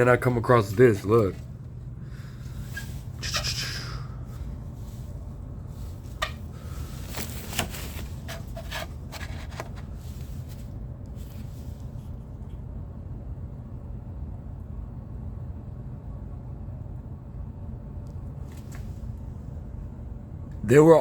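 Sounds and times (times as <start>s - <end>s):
low hum: 0.0s - 20.6s
handling rub: 2.3s - 12.2s.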